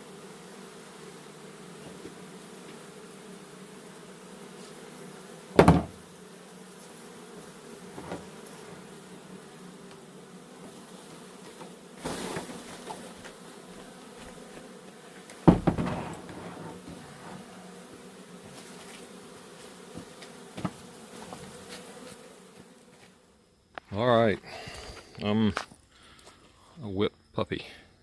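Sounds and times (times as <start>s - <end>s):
honey bees buzzing: 0.0s - 25.3s
loud knocks: 5.6s - 6.0s, 15.4s - 16.4s.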